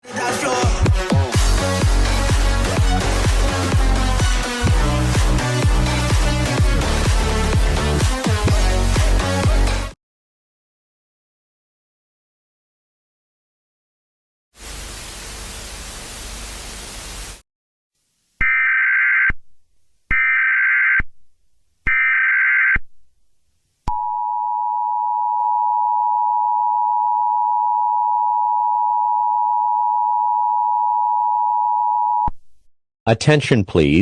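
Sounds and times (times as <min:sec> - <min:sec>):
static hiss: 0:14.6 - 0:17.4
harsh dual tone alarm: 0:18.4 - 0:19.4, 0:20.1 - 0:21.0, 0:21.9 - 0:22.8, 0:24.0 - 0:32.3.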